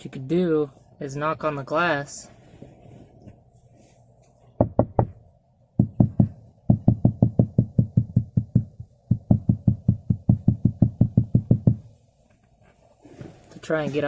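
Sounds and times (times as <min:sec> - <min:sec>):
rapid knocking on glass: 0:04.6 - 0:05.2, 0:05.8 - 0:11.9.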